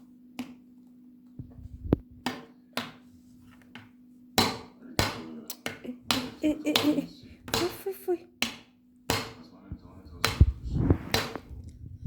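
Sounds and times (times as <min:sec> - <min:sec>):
steady low hum: 0:01.4 - 0:02.3, 0:09.4 - 0:12.0.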